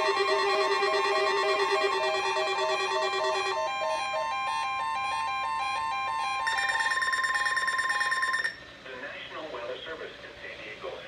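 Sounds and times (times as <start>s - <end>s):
steady tone: 0.0s - 6.4s
high-pitched beeping: 0.0s - 8.6s.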